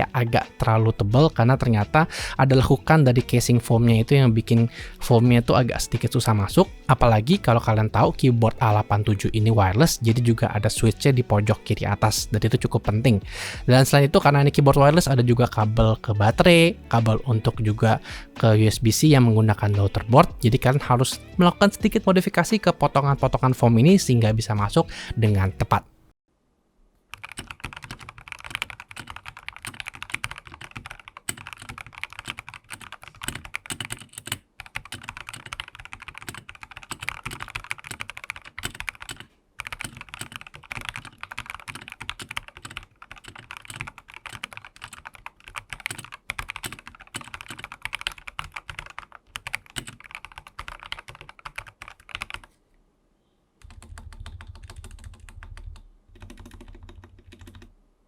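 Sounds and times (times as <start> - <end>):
fast typing on mechanical keyboard: 0.6 - 15.8, 27.1 - 52.5, 53.6 - 57.7.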